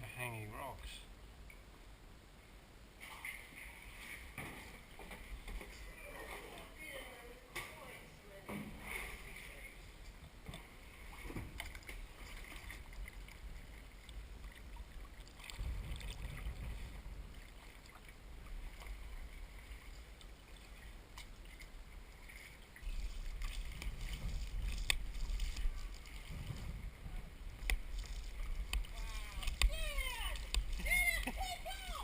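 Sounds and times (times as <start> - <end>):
paddle splashing in water: 3.0 - 32.0
wind buffeting microphone: 15.5 - 17.4, 22.8 - 32.0.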